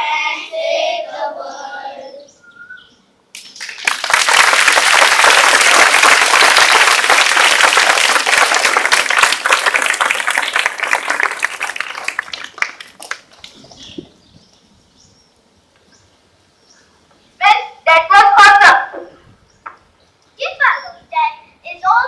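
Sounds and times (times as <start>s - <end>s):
audience applauding: 3.4s - 13.6s.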